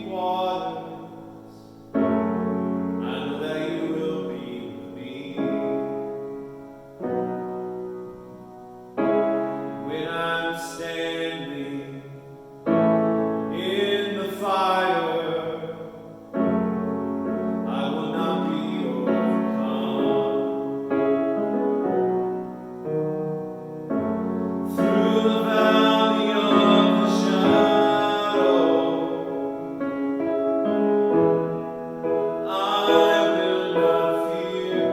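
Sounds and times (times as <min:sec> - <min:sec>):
person singing: 0:00.0 - 0:01.8, 0:03.0 - 0:06.3, 0:09.6 - 0:12.5, 0:13.4 - 0:16.2, 0:17.4 - 0:21.8, 0:24.5 - 0:34.9
piano music: 0:00.0 - 0:34.9.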